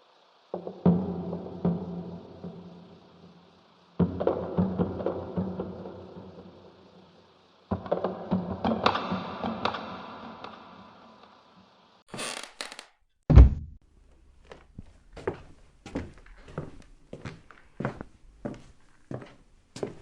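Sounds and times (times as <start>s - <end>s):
heavy wooden thud: 13.3s - 13.8s.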